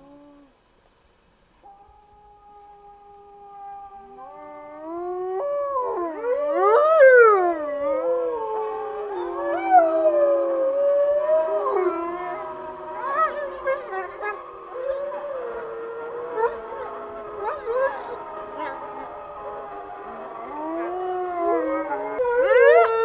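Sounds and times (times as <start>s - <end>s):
wolves howling in chorus: 1.6s - 23.0s.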